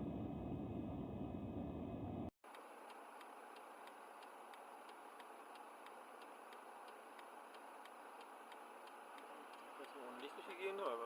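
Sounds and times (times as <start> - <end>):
turn signal ticking: 2.5 - 11.0.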